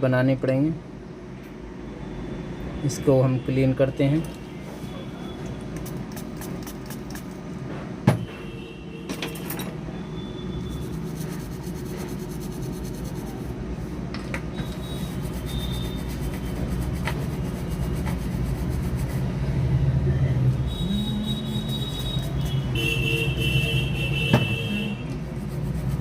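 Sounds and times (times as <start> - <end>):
scraping on circuit board: 10.6 - 13.5, 14.6 - 19.4, 25.2 - 26.0
steady low hum: 10.6 - 23.9.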